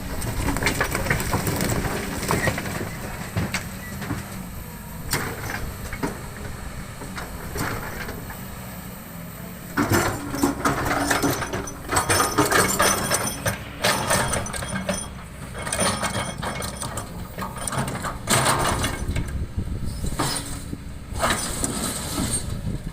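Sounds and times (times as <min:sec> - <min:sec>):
excavator diesel engine running: 0:00.0 - 0:22.9.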